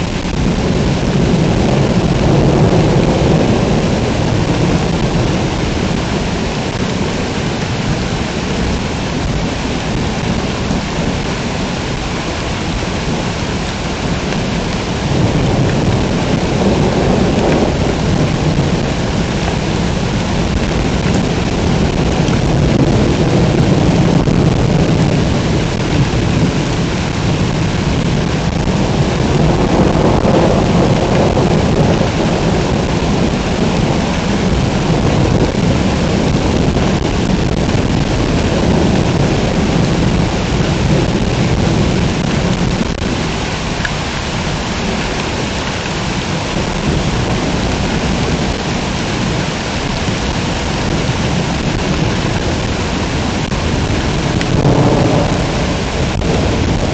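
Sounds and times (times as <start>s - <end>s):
heavy pouring rain: 0.0s - 56.9s
rolling thunder: 0.0s - 56.9s.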